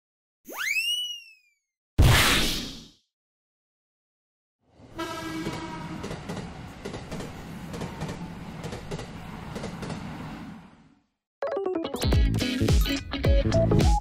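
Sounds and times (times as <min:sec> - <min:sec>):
train horn blast: 0:04.9 - 0:06.2
train wheels clattering over rail joints: 0:05.4 - 0:10.3.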